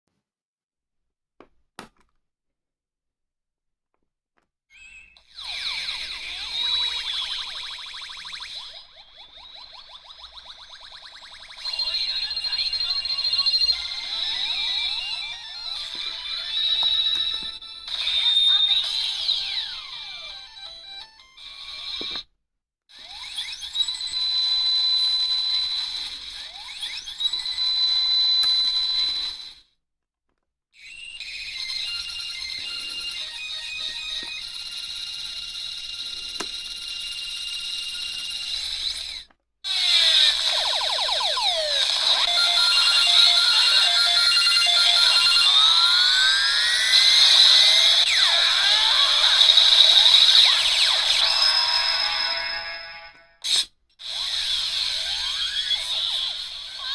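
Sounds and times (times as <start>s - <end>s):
electronic upward sweep and beep: 40.3s - 52.8s.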